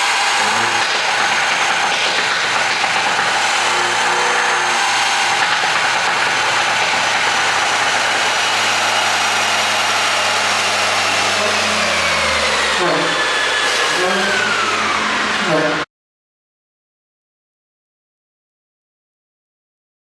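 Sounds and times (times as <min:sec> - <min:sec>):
road noise: 0:04.4 - 0:15.8.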